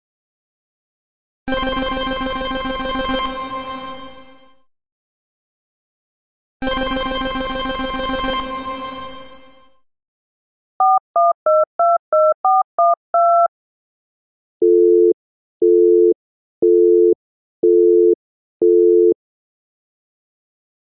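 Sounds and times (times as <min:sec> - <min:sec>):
busy signal beeps: 0:10.8 - 0:13.5, 0:14.6 - 0:19.2
phone ringing: 0:10.8 - 0:13.5
touch-tone dialling beeps: 0:10.8 - 0:13.5.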